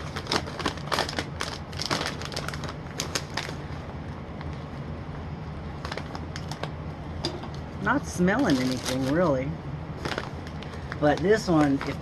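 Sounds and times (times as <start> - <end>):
snack bag crinkling: 0.0 - 3.7, 5.8 - 6.7, 8.4 - 9.2, 10.0 - 12.0
steady low hum: 0.0 - 12.0.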